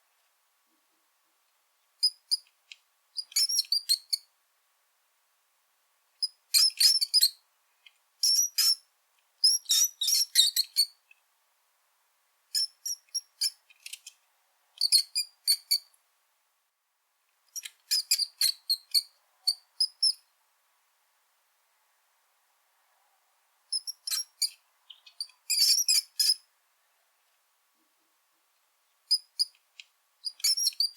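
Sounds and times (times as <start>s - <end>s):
rat squeaking: 3.2s - 4.2s, 6.2s - 7.3s, 8.2s - 8.8s, 9.4s - 11.0s, 14.8s - 15.9s, 17.6s - 20.2s, 23.7s - 26.4s, 29.1s - 29.5s, 30.2s - 30.9s.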